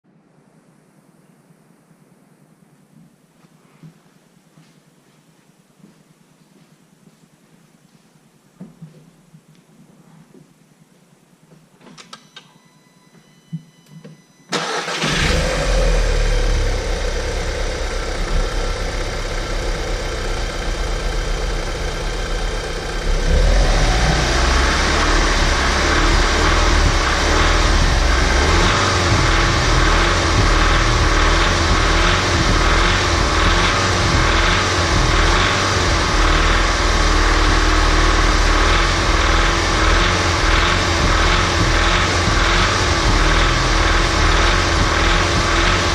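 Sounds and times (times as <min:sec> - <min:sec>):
car engine starting and idling: 0:14.5 - 0:45.9.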